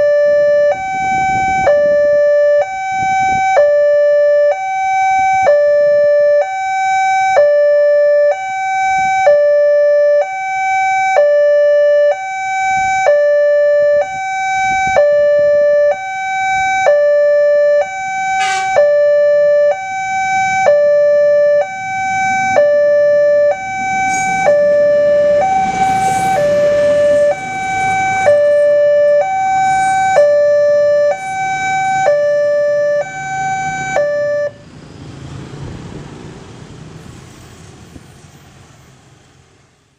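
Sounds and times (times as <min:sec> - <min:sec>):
two-tone crossing alarm: 0:00.0 - 0:34.6
passing train rumble: 0:21.7 - 0:32.0, 0:33.6 - 0:39.9.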